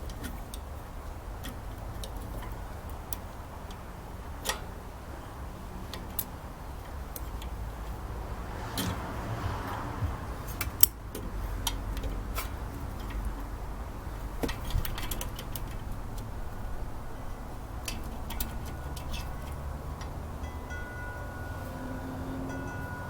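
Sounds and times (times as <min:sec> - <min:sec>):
metal clinks of hand tools: 0:17.8 - 0:23.0.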